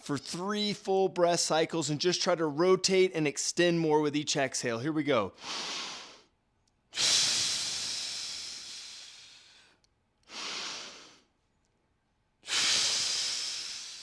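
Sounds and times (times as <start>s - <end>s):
person breathing deeply: 7.0s - 11.3s, 12.5s - 14.0s.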